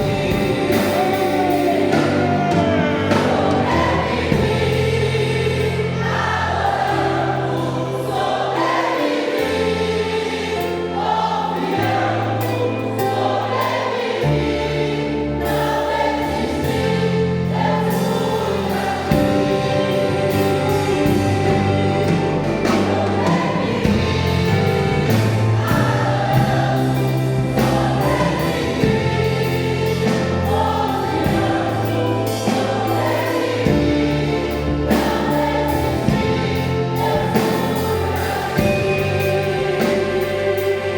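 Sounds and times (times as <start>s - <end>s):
bass line: 0.0s - 7.5s, 15.4s - 40.9s
choir singing gospel: 0.0s - 40.9s
instrumental accompaniment: 0.0s - 40.9s.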